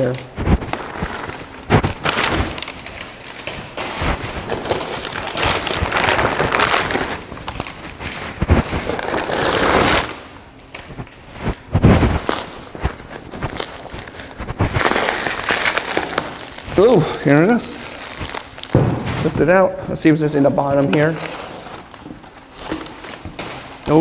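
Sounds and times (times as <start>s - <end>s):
packing paper crinkling: 0.0s - 24.0s
knocks and thuds: 18.7s - 20.0s.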